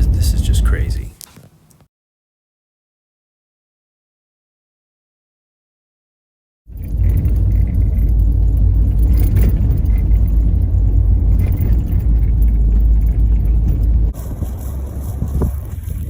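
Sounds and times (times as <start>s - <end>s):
car engine and road noise: 0.0s - 1.8s, 6.7s - 16.0s.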